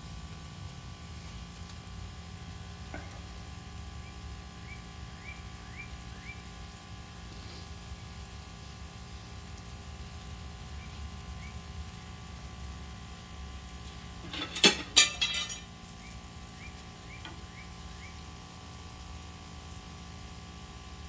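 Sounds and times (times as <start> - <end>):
steady low hum: 0.0 - 21.0
cookware clinking together: 14.2 - 15.7.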